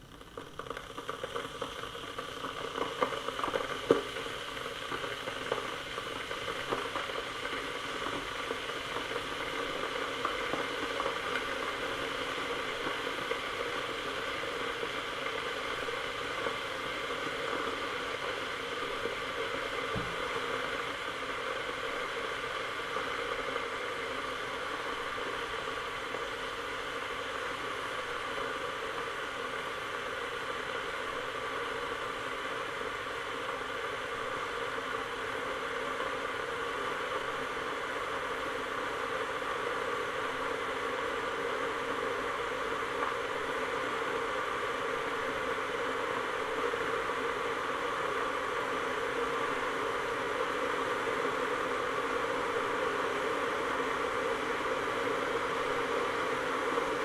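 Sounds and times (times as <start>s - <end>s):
kettle ticks and pops: 0.0s - 31.4s, 42.0s - 47.5s
kettle water hissing: 0.0s - 57.0s.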